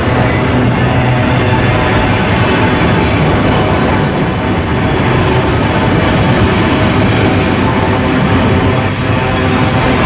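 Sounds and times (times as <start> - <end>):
train wheels rumbling on rail: 0.0 - 10.0.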